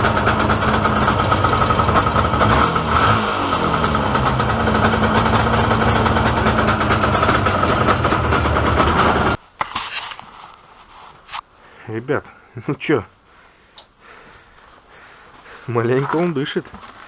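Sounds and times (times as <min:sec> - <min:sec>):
motorcycle engine running roughly: 0:00.0 - 0:09.4.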